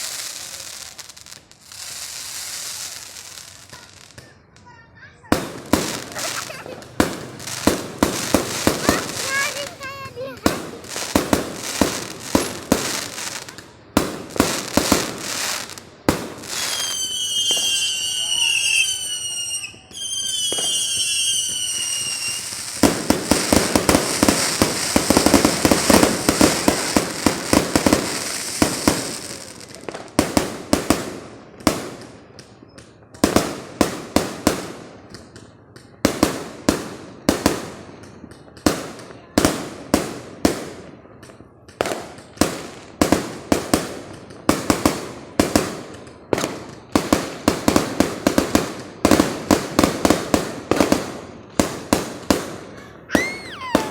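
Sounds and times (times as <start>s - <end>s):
fireworks whistling: 0.0s - 4.6s, 5.2s - 30.0s, 45.6s - 53.9s
fireworks bangs: 0.0s - 53.9s
fireworks crackling: 0.0s - 53.9s.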